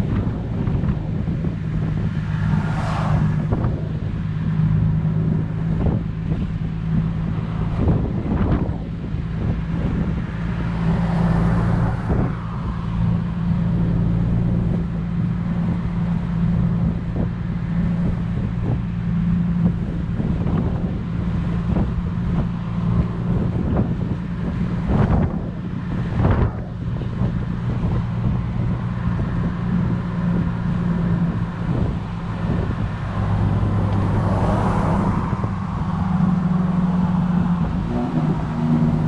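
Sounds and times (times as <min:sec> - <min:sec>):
car engine droning: 0:00.0 - 0:39.0
road and wind noise: 0:00.0 - 0:39.0.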